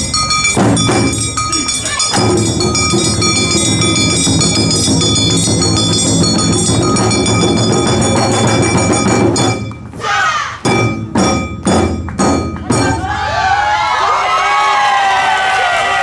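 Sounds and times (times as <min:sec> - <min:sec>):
dance music with ringing chords: 0:00.0 - 0:09.8
sharp beats: 0:00.0 - 0:14.0.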